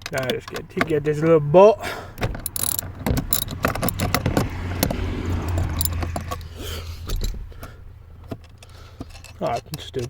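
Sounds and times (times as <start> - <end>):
hand tool metallic clicks: 0.0 - 1.4, 2.3 - 7.4.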